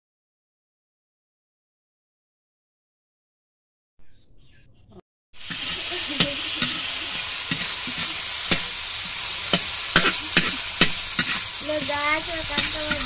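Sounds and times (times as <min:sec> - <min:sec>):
stir-frying sizzle in oil: 0:05.4 - 0:13.0
utensil knocking against pan: 0:09.5 - 0:13.0.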